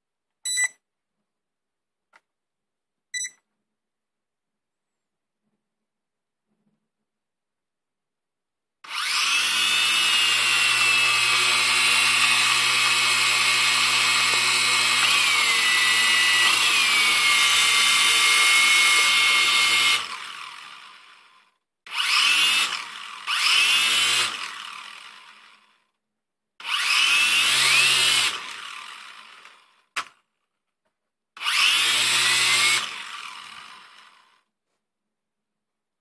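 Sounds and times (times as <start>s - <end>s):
quadcopter motors whining: 8.9s - 25.7s, 26.6s - 29.7s, 31.4s - 34.4s.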